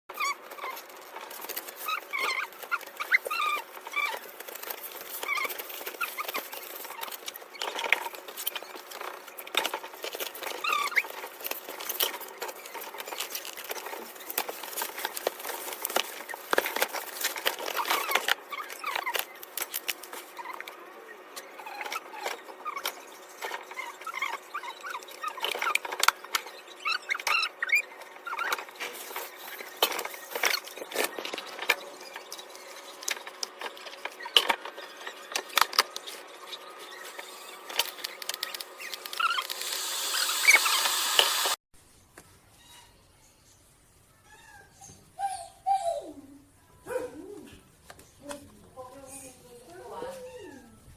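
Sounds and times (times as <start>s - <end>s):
rustling: 0.1s - 20.8s.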